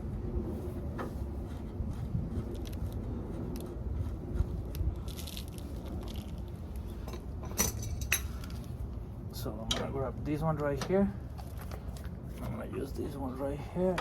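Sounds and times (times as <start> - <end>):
steady low rumble: 0.0 - 14.0
small scrapes and clicks: 1.8 - 7.0.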